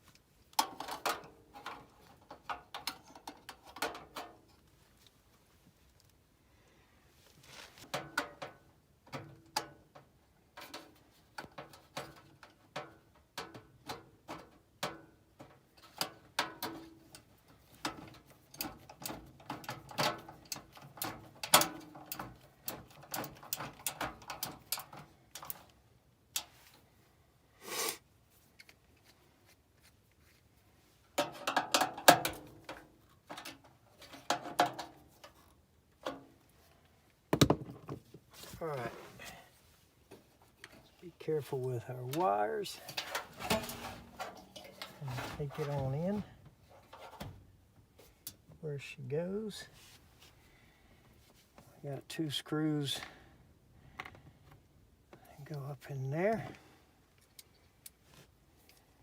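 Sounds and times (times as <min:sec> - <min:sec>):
metal clicks and rattles: 0:07.9 - 0:26.6, 0:31.2 - 0:36.3, 0:42.1 - 0:46.1.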